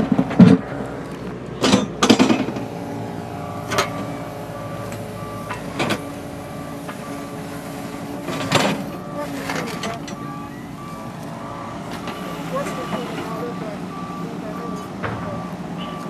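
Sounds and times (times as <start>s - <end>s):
engine running steadily: 0.0s - 16.0s
sharp knocks and clanks: 1.6s - 2.8s.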